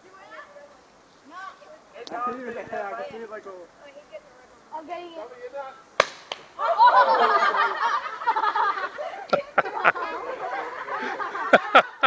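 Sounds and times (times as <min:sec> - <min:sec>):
sharp crack: 0:06.0 - 0:06.6
loud laughter: 0:06.6 - 0:12.0.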